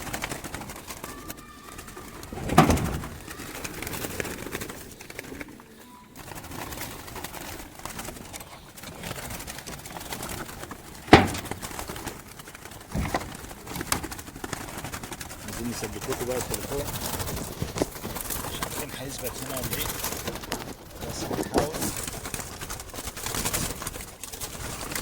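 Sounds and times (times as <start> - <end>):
doves cooing: 0.0 - 25.0
sharp knocks: 11.1 - 11.7.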